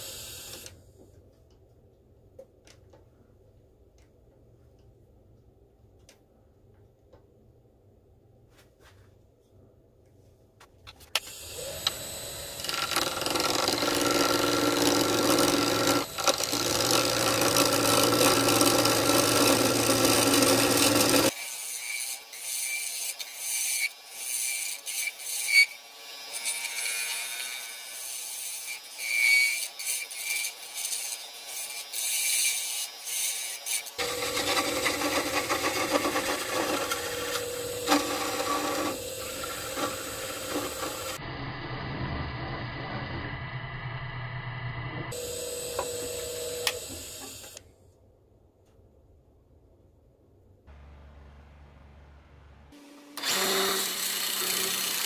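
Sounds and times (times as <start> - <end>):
wood lathe running: 11.4 - 21.3, 32.7 - 41.2, 45.1 - 47.6, 53.2 - 55.0
tool scraping spinning wood: 11.6 - 21.4, 34.0 - 41.2.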